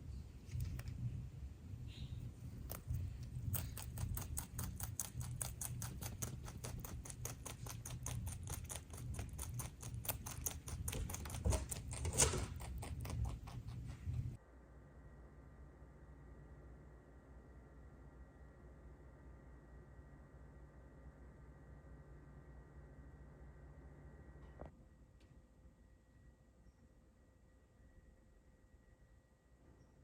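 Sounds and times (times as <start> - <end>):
rabbit chewing greens: 0.0 - 14.4.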